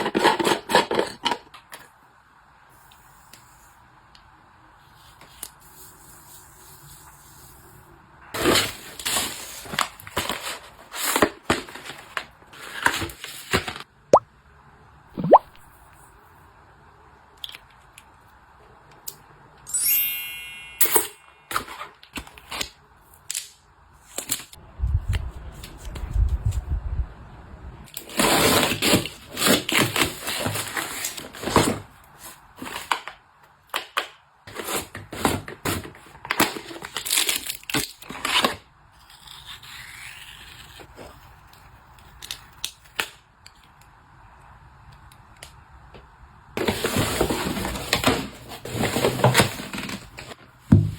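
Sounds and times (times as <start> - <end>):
packaging crinkling and tearing: 8.4 - 13.8, 34.5 - 40.9.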